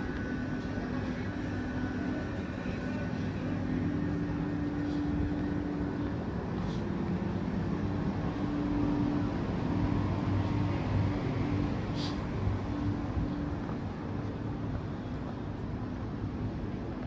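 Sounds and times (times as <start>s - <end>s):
engine droning steadily: 0.0s - 17.0s.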